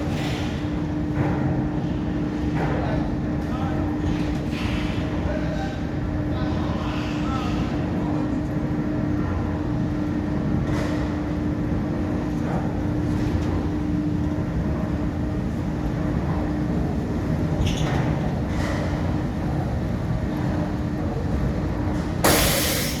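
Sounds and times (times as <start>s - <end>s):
loud hiss burst: 22.3s - 23.0s.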